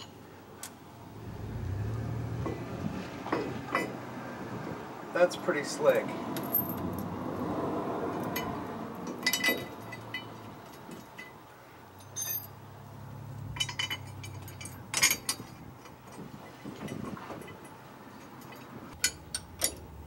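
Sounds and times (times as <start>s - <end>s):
steel hardware clinking: 2.4s - 4.0s, 8.2s - 12.7s, 13.4s - 20.0s.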